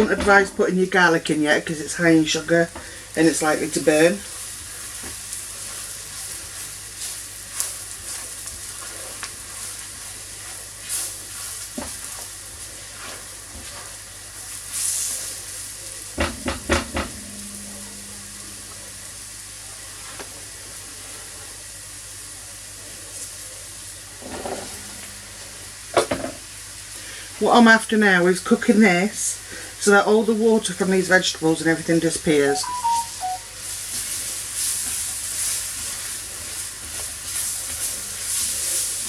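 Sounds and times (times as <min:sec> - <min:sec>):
vegetables sizzling in a frying pan: 0:00.0 - 0:39.0
spoon knocking on a pan: 0:16.2 - 0:18.7.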